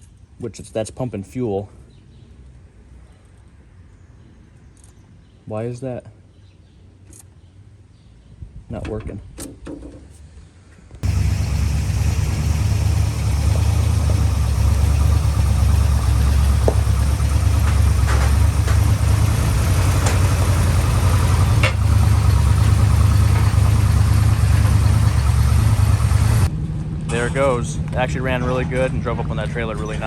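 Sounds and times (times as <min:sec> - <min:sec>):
car engine running: 0:11.0 - 0:26.5.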